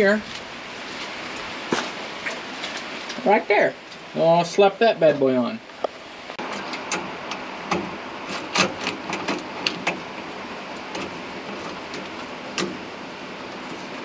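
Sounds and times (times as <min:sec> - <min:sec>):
steady hiss of rain: 0:00.0 - 0:14.0
sharp metal clicks and knocks: 0:06.5 - 0:10.2, 0:10.9 - 0:12.8.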